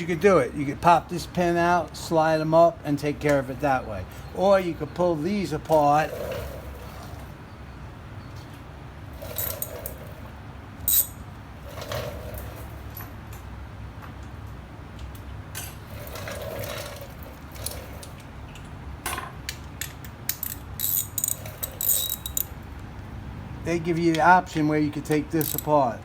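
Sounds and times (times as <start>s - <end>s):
metal brake parts clicking and rattling: 9.2s - 13.5s, 15.5s - 22.8s.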